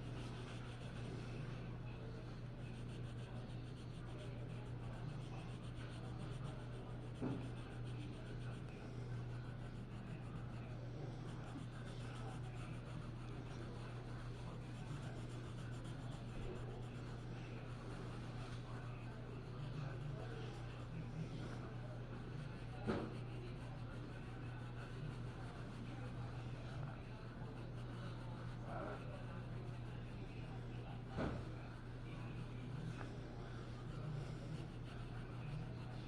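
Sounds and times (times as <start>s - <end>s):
drawing tool scratching paper: 0.0s - 36.0s
low electrical hum: 0.0s - 36.0s.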